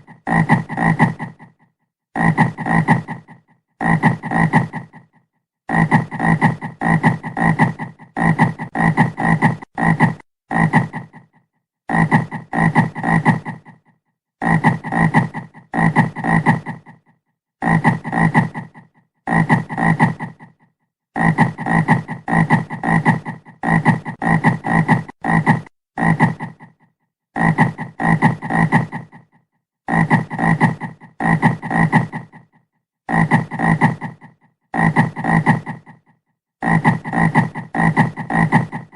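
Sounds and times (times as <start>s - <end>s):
frog croaking: 0.0s - 1.6s, 2.2s - 17.0s.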